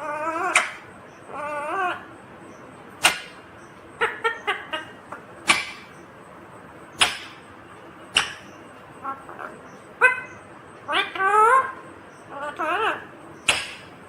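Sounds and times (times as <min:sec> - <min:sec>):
parakeet squawks: 0:00.0 - 0:02.1, 0:04.0 - 0:06.0, 0:08.2 - 0:13.9
parakeet warbling call: 0:00.0 - 0:02.2, 0:08.2 - 0:13.9.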